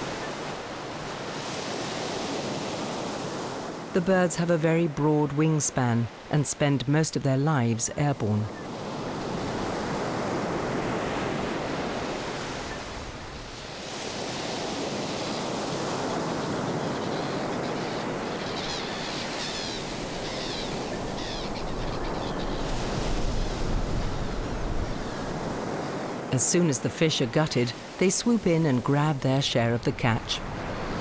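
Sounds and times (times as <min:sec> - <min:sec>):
surf washing onto beach: 0:00.0 - 0:04.0, 0:08.9 - 0:29.1
short high bird calls: 0:16.8 - 0:22.7.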